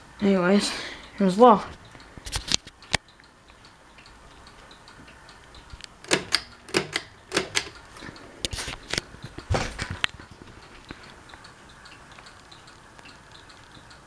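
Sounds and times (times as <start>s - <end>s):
ceiling fan clicks and knocks: 1.7s - 14.0s.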